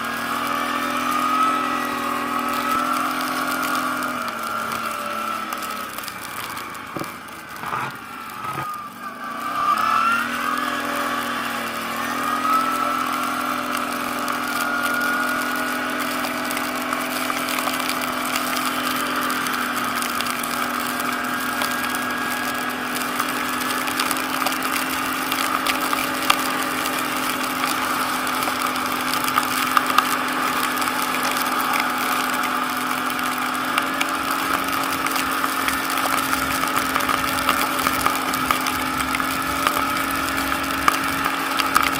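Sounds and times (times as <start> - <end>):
atv engine revving: 0.0 - 41.9.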